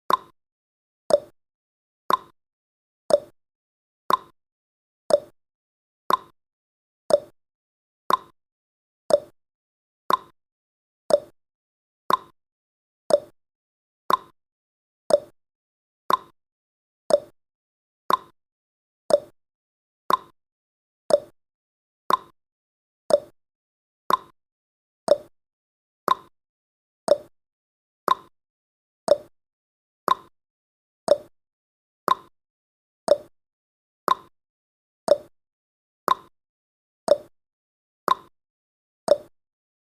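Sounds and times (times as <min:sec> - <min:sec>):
clock ticking: 0:02.1 - 0:02.3, 0:03.1 - 0:03.3, 0:04.1 - 0:04.3, 0:05.1 - 0:05.3, 0:06.1 - 0:06.3, 0:07.1 - 0:07.3, 0:08.1 - 0:08.3, 0:09.1 - 0:09.3, 0:10.1 - 0:10.3, 0:11.1 - 0:11.3, 0:12.1 - 0:12.3, 0:13.1 - 0:13.3, 0:14.1 - 0:14.3, 0:15.1 - 0:15.3, 0:16.1 - 0:16.3, 0:17.1 - 0:17.3, 0:18.1 - 0:18.3, 0:19.1 - 0:19.3, 0:20.1 - 0:20.3, 0:21.1 - 0:21.3, 0:22.1 - 0:22.3, 0:23.1 - 0:23.3, 0:24.1 - 0:24.3, 0:25.1 - 0:25.3, 0:26.1 - 0:26.3, 0:27.1 - 0:27.3, 0:28.1 - 0:28.3, 0:29.1 - 0:29.3, 0:30.1 - 0:30.3, 0:31.1 - 0:31.3, 0:32.1 - 0:32.3, 0:33.1 - 0:33.3, 0:34.1 - 0:34.3, 0:35.1 - 0:35.3, 0:36.1 - 0:36.3, 0:37.1 - 0:37.3, 0:38.1 - 0:38.3, 0:39.1 - 0:39.3.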